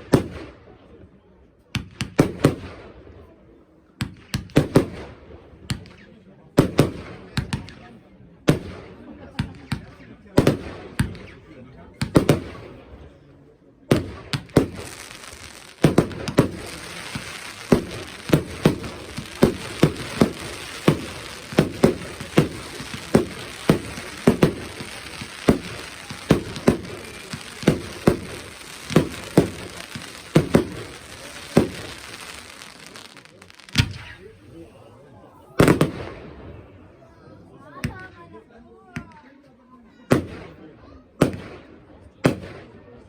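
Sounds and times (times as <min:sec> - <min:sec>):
firework bangs: 0:13.9 - 0:34.4, 0:35.6 - 0:36.3
crackling hiss: 0:14.6 - 0:34.5.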